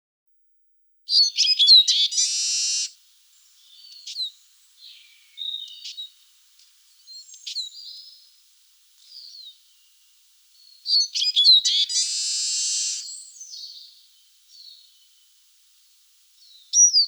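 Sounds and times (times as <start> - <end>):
bird calls: 1.1 - 6.2, 6.9 - 8.3, 9.0 - 10.0, 10.6 - 15.4, 16.4 - 17.0
bird twittering song: 1.1 - 6.2, 6.9 - 8.3, 9.0 - 15.4, 16.4 - 17.0.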